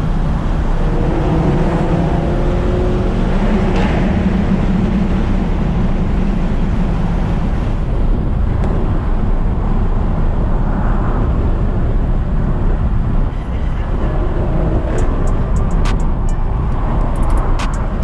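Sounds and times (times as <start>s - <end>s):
car engine drone: 0.0s - 18.0s
road and wind noise: 0.0s - 18.0s.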